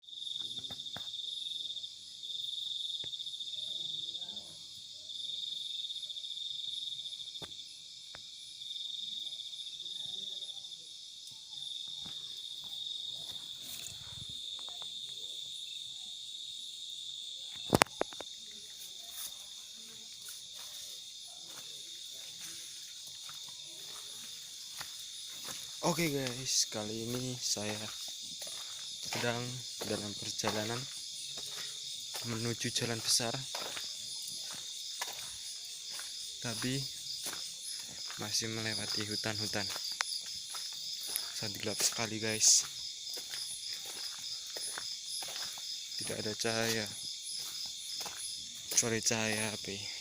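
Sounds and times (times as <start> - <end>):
night insects trilling: 0.0 - 50.0.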